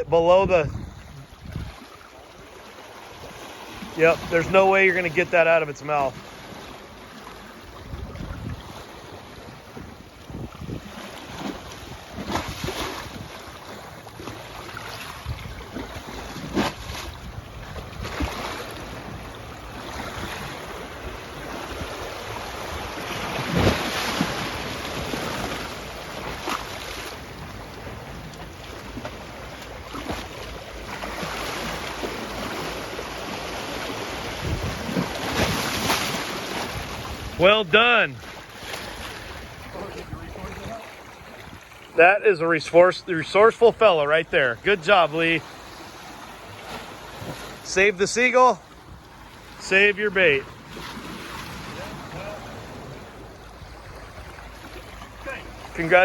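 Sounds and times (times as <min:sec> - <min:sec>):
wind buffeting microphone: 0:00.0 - 0:01.8, 0:07.8 - 0:08.8, 0:09.7 - 0:11.0, 0:34.2 - 0:35.9
waves washing: 0:00.0 - 0:56.0.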